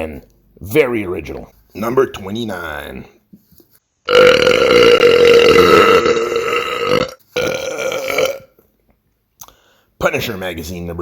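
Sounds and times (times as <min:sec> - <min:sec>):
man belching: 0:04.1 - 0:08.6.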